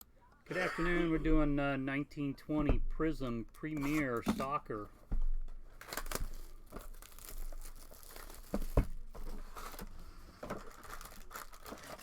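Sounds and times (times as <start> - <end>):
plastic wrapping crinkling and tearing: 5.7 - 12.0.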